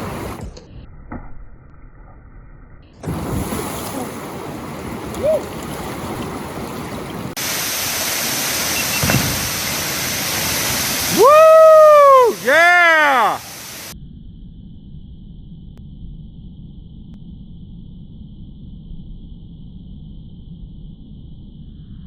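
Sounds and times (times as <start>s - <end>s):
rushing whitewater: 3.0s - 13.9s
hiss of falling water: 3.0s - 14.0s.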